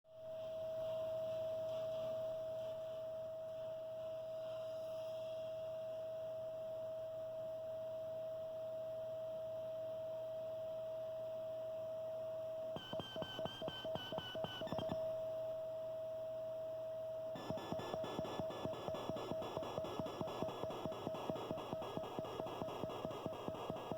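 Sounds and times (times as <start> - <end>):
faint low hum: 0.1 - 23.9
electrical whine: 12.8 - 15.2, 17.4 - 23.9
rapid electrical ticking: 17.4 - 23.9.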